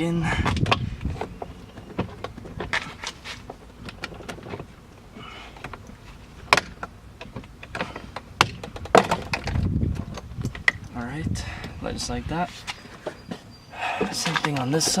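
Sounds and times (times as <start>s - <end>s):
plastic clips creaking and scraping: 14.2s - 15.0s.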